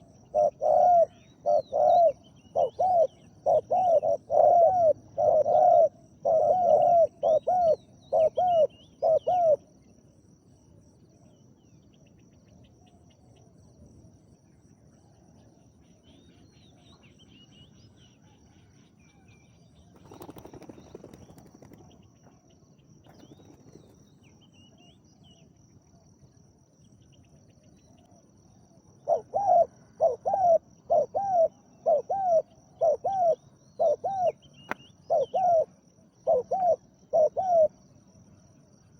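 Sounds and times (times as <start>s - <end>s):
dove cooing: 0.0s - 9.7s, 29.0s - 37.8s
faint small bird chirps: 11.2s - 29.3s, 30.5s - 35.5s.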